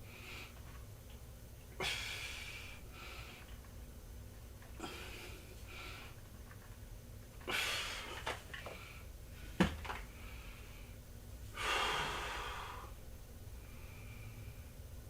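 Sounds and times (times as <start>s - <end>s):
person breathing hard: 1.8s - 3.6s, 4.8s - 6.2s, 7.5s - 13.0s.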